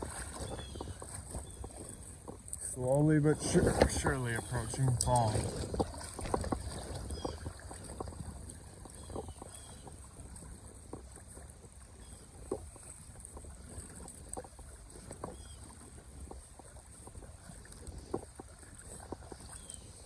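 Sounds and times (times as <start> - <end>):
small splashes and clicks: 0.0 - 20.0.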